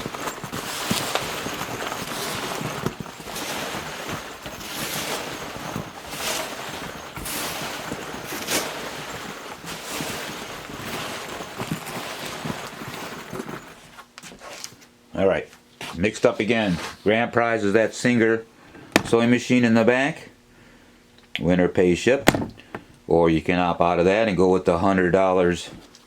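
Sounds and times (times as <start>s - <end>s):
fabric bags rustling: 0.0s - 14.8s, 18.9s - 19.2s
sharp knocks: 18.9s - 19.2s, 22.3s - 22.7s.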